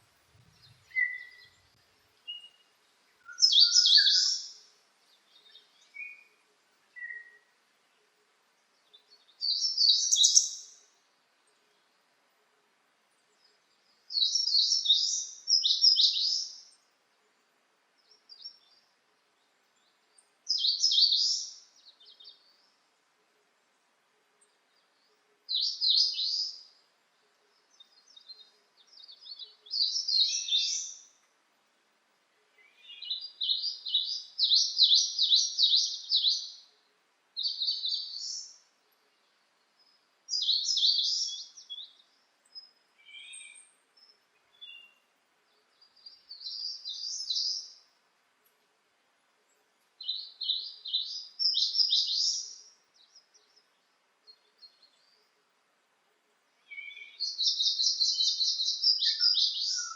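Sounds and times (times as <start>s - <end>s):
songbird trilling: 0.6s - 1.6s, 3.3s - 4.6s, 9.4s - 10.7s, 56.7s - 59.9s.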